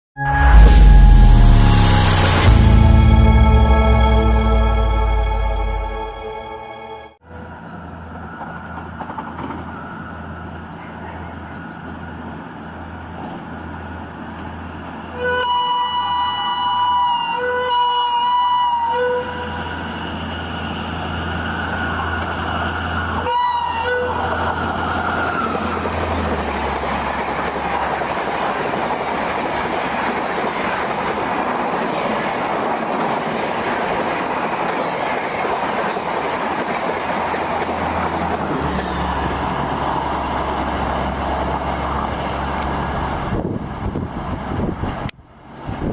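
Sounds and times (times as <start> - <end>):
train horn blast: 0.2 - 7.2, 15.1 - 19.7, 23.1 - 26.7, 37.8 - 40.4
train coaches rushing on rails: 0.6 - 45.9.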